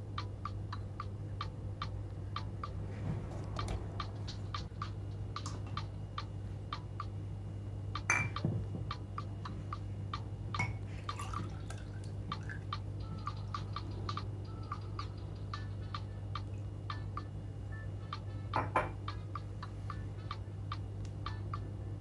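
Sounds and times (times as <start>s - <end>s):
steady low hum: 0.0s - 22.0s
loud glass clink: 8.1s - 8.4s
kitchenware tapping glass: 8.1s - 8.5s, 18.6s - 19.0s.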